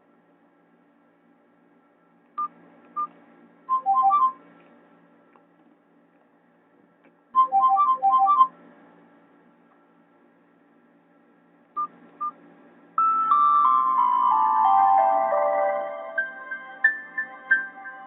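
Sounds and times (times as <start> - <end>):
descending ringtone notes: 3.7 - 4.4, 7.4 - 8.5, 13.0 - 18.0
phone ringtone electronic notes: 3.7 - 4.4, 7.4 - 8.5, 13.0 - 18.0.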